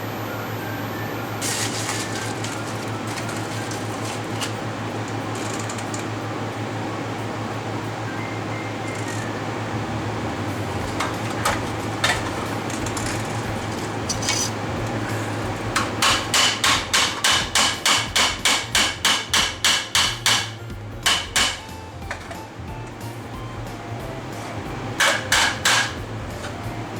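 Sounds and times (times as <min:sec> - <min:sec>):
steady low hum: 0:00.0 - 0:26.9
hammer beating sheet metal: 0:10.5 - 0:22.4, 0:24.9 - 0:26.7.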